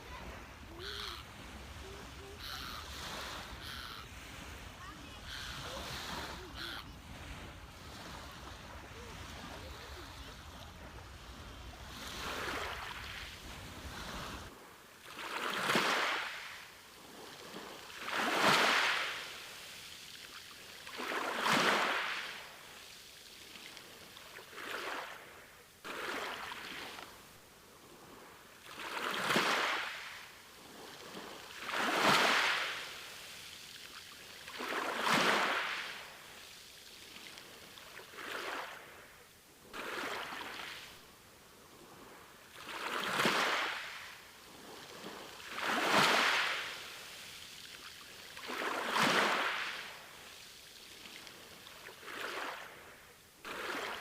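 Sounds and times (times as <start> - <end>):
ocean waves washing onto beach: 0.0 - 54.0.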